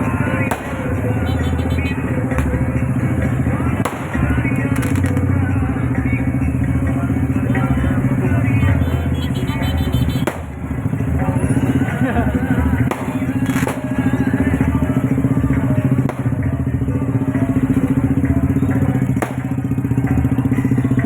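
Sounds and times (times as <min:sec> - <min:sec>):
engines running: 0:00.0 - 0:21.0
voices: 0:00.0 - 0:21.0
sharp cracks: 0:00.4 - 0:01.0, 0:03.7 - 0:05.4, 0:10.2 - 0:10.7, 0:12.8 - 0:14.0, 0:16.0 - 0:16.4, 0:19.1 - 0:19.8.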